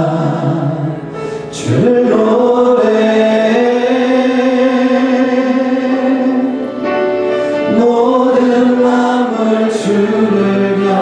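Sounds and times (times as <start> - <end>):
worship singing with instruments: 0.0 - 11.0.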